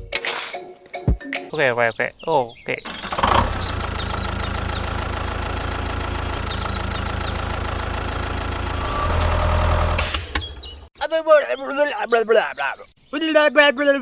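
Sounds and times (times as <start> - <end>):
tractor engine idling: 2.8 - 10.9.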